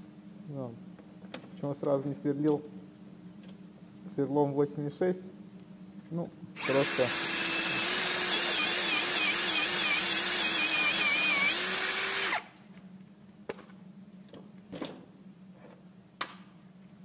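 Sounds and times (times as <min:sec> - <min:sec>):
cordless drill drilling metal: 0:06.6 - 0:12.5.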